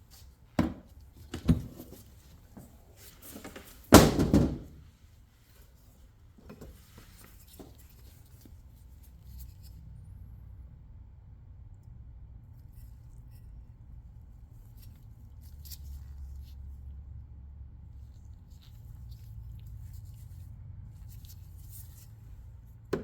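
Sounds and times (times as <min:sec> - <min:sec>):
ammunition box knocks and clatter: 0:04.0 - 0:04.7.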